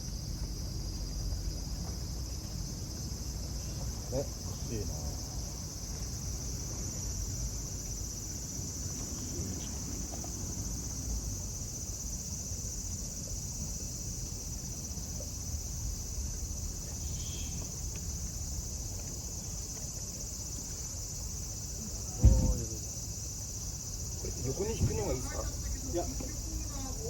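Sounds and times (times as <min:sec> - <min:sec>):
insects shrilling: 0:16.8 - 0:27.0.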